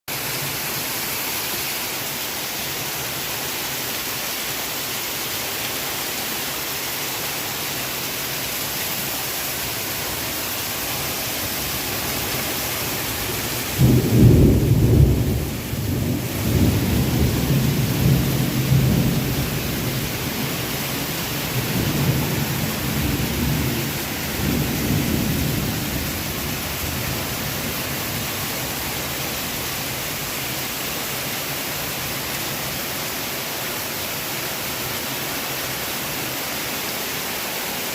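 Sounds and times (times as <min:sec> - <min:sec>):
heavy rain hissing: 0:00.1 - 0:37.9
thunder clap and rumble: 0:13.6 - 0:20.7, 0:21.5 - 0:28.2.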